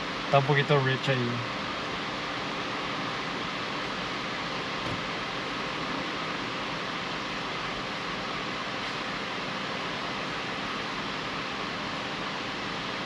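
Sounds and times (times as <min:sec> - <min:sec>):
large fan running: 0:00.0 - 0:13.0.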